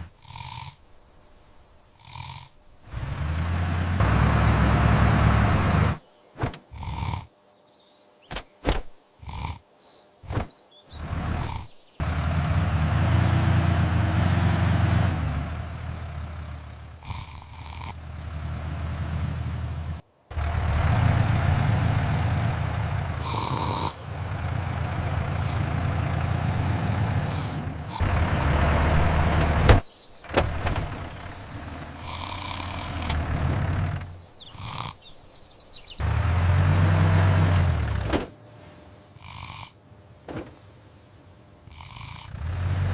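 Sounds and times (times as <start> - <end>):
tractor engine droning: 2.8 - 6.0, 10.9 - 34.4, 35.9 - 38.4, 42.3 - 42.9.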